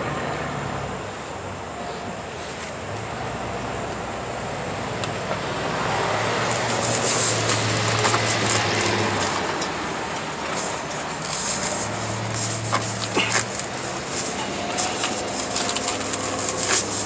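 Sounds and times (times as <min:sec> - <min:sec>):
vehicle passing on road: 0:03.5 - 0:17.0
scratchy rubbing and clicking: 0:06.5 - 0:17.0.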